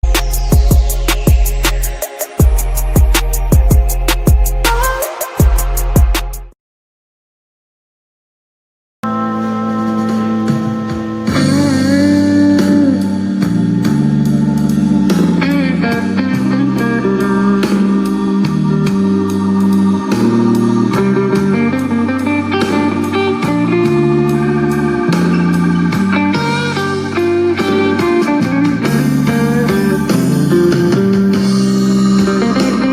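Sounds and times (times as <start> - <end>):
blues guitar music from speaker: 9.0 - 32.9.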